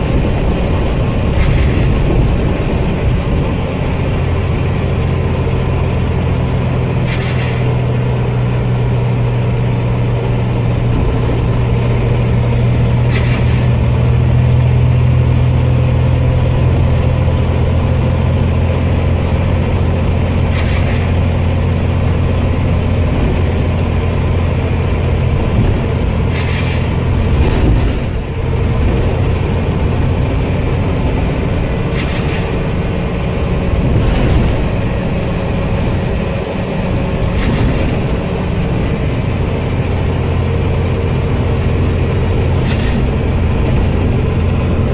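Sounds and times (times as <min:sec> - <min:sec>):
bus engine running: 0:00.0 - 0:44.9.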